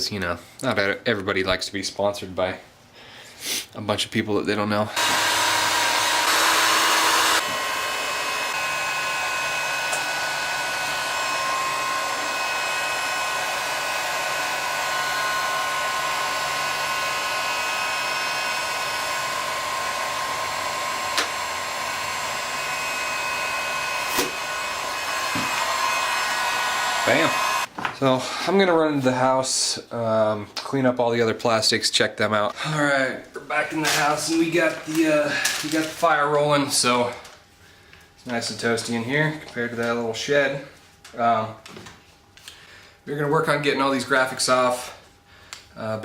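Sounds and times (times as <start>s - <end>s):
heat gun blowing hiss: 5.0s - 27.7s.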